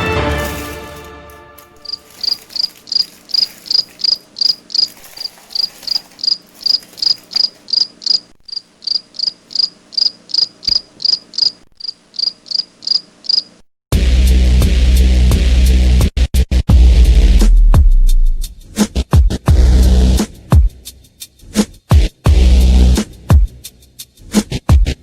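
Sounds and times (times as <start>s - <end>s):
background music: 0.0s - 3.7s
cricket chirping: 1.8s - 13.6s.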